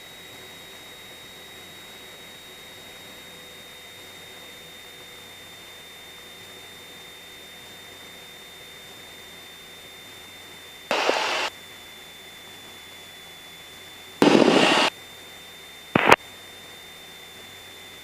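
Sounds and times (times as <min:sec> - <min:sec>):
headset hiss: 0:10.9 - 0:11.5, 0:14.2 - 0:14.9, 0:16.0 - 0:16.2
radio static bursts: 0:10.9 - 0:11.5, 0:14.2 - 0:14.9, 0:16.0 - 0:16.2.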